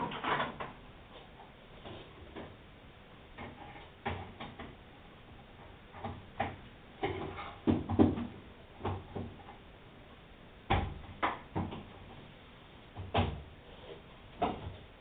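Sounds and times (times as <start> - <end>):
knocks and clunks of objects: 0.0 - 0.8, 1.8 - 2.6, 3.3 - 4.8, 5.6 - 9.6, 10.7 - 12.3, 12.9 - 13.5, 14.4 - 15.0
sharp knocks and clatters: 5.9 - 9.5.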